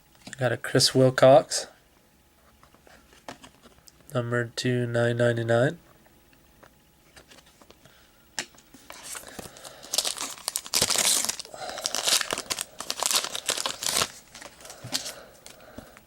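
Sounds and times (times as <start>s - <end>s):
wrapper crinkling and tearing: 9.1s - 15.6s.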